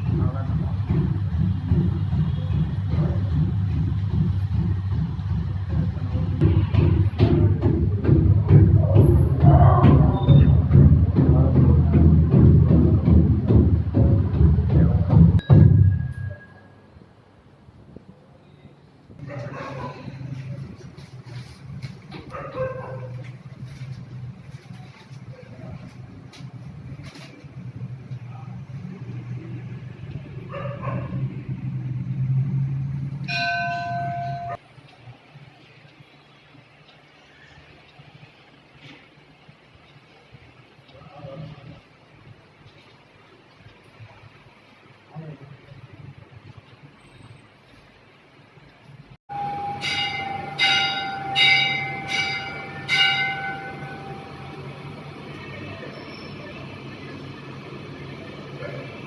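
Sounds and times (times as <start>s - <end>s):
temple bell ringing: 15.4s - 17.0s, 33.2s - 34.6s, 49.3s - 58.0s.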